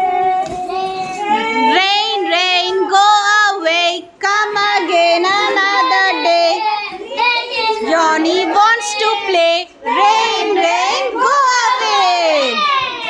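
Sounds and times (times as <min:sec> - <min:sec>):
children singing: 0:00.0 - 0:13.0.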